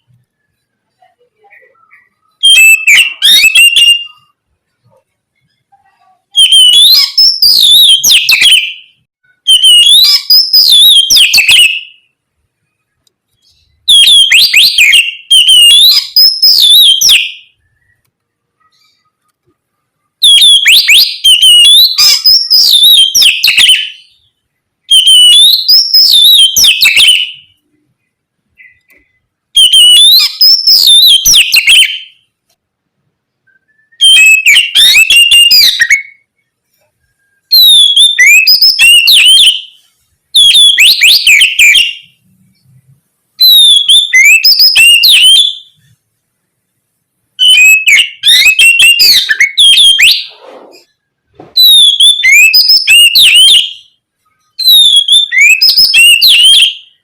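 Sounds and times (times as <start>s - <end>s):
bird singing whistled song: 1.4s - 4.4s, 6.3s - 12.1s, 13.4s - 19.1s, 20.2s - 24.3s, 24.9s - 27.6s, 28.6s - 32.3s, 33.4s - 36.3s, 37.0s - 39.8s, 40.4s - 42.2s, 43.4s - 45.8s, 47.4s - 50.4s, 51.6s - 57.0s.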